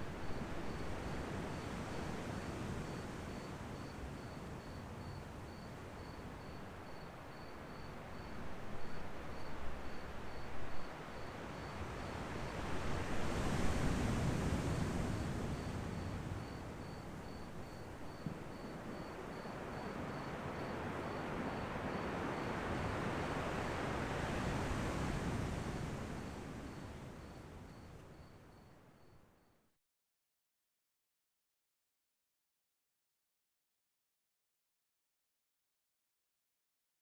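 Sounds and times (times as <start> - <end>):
cricket chirping: 0.0 - 29.6
ocean surf washing in: 19.3 - 27.4.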